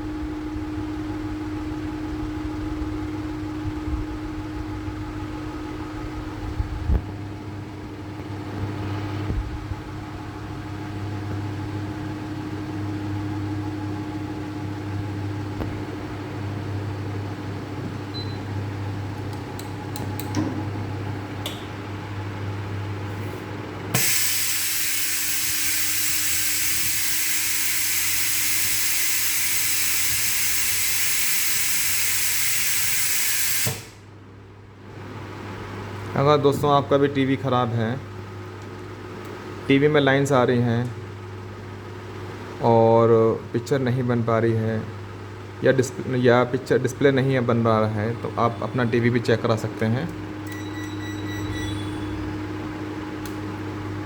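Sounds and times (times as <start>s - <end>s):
electrical hum of machinery: 0.0s - 54.0s
loud hiss of air: 23.9s - 34.1s.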